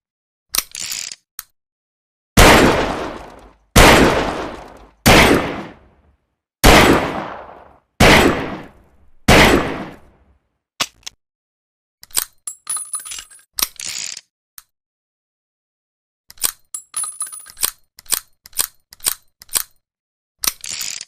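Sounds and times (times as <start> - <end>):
revolver gunshots: 2.4 - 6.0, 6.6 - 10.2.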